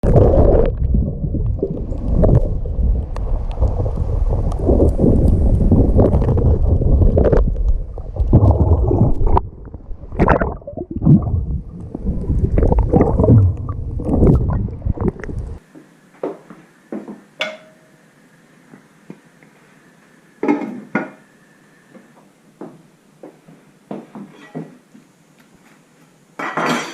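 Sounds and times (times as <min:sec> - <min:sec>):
muffled underwater rumbling: 0:00.0 - 0:15.6.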